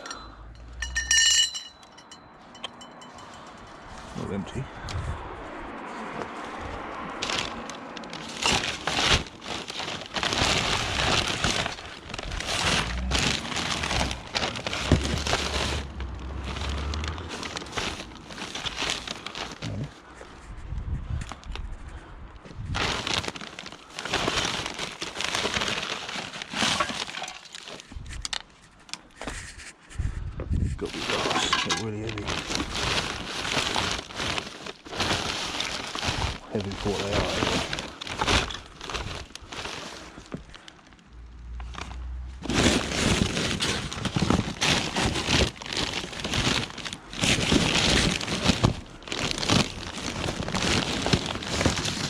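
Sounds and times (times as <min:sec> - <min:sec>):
glass pieces knocking together: 0:00.0 - 0:02.8
scrap items clattering and crinkling: 0:05.8 - 0:20.4, 0:22.8 - 0:29.8, 0:30.8 - 0:41.0, 0:41.6 - 0:52.0.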